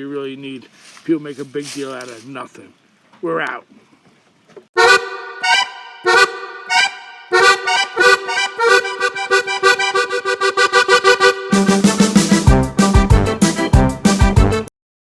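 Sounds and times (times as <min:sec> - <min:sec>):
music with repeated chords: 0:04.8 - 0:14.7.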